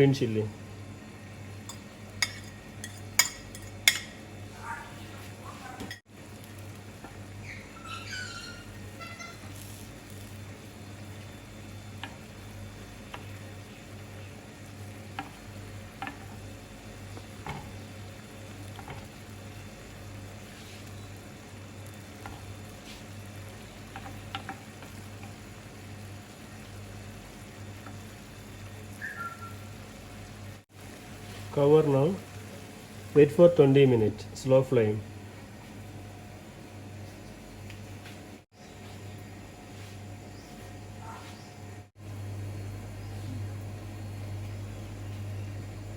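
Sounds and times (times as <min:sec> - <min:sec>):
constant low hum: 0:00.0 - 0:45.9
gravy bubbling and sizzling: 0:00.6 - 0:45.9
utensil clicking against pot: 0:23.9 - 0:25.4.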